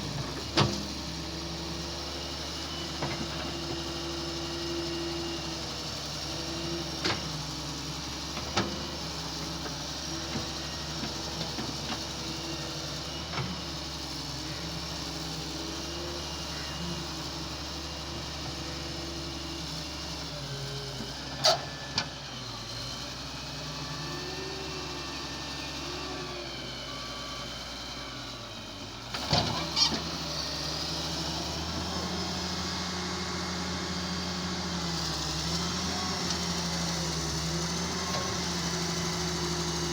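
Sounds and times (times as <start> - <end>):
excavator engine running: 0.0 - 39.9.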